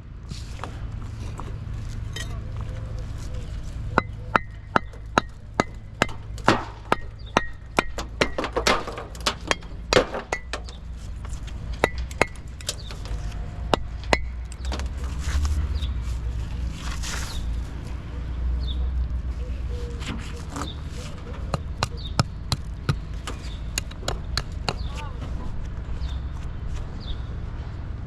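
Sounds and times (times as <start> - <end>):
sharp ringing knocks: 4.0 - 10.8.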